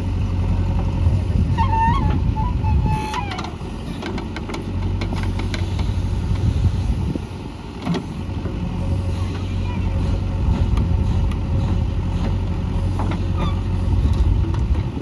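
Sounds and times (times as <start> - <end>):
diesel engine running: 0.0 - 15.0
brief squeal: 13.3 - 13.7.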